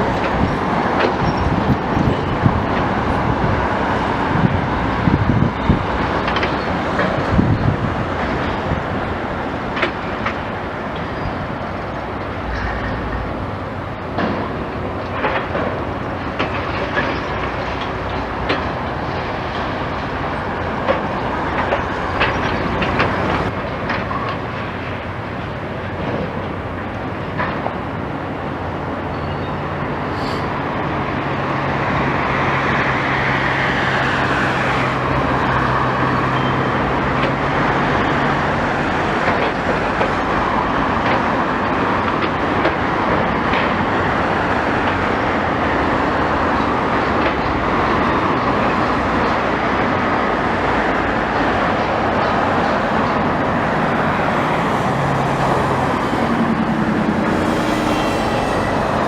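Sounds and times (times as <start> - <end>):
traffic rumble: 0.0 - 59.0.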